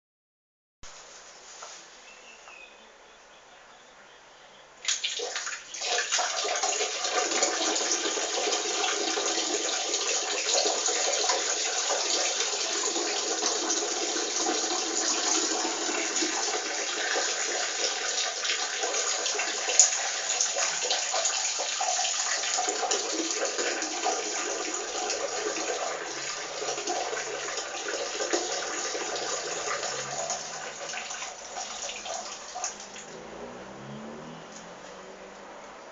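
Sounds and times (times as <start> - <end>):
urine splashing into toilet water: 4.8 - 33.2.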